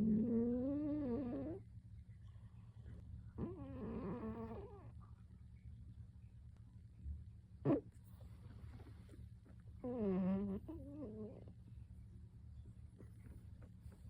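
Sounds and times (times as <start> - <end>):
cat snoring: 0.0 - 1.6, 3.4 - 4.9, 9.8 - 11.5.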